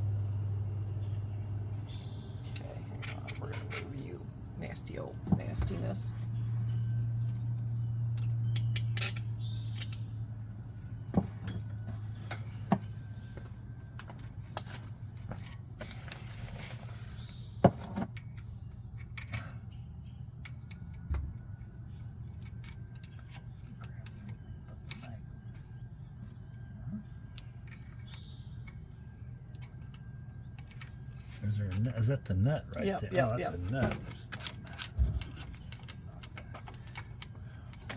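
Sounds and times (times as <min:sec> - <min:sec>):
steady low hum: 0:00.0 - 0:37.9
metal tools clinking and knocking: 0:01.0 - 0:04.2, 0:06.7 - 0:10.1, 0:20.4 - 0:25.6, 0:29.4 - 0:32.3, 0:33.0 - 0:37.9.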